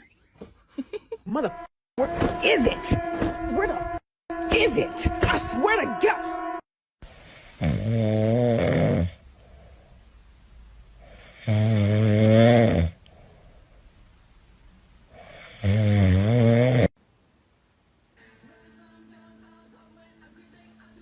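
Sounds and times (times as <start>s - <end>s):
loud snoring: 7.3s - 9.2s, 11.1s - 13.0s, 15.2s - 16.9s
quiet breaths: 9.2s - 11.5s, 13.0s - 14.2s.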